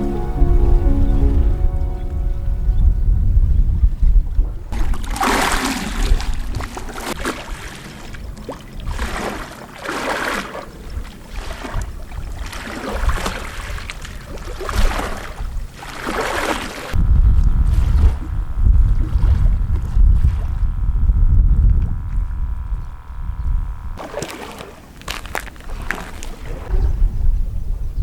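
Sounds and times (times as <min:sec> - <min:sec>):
small sea waves washing in: 0:04.7 - 0:17.0.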